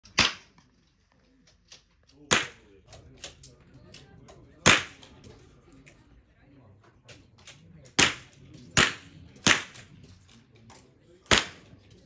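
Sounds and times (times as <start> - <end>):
loud sharp cracks: 0.0 - 0.5, 2.3 - 2.6, 4.6 - 5.1, 8.0 - 9.9, 11.3 - 11.7.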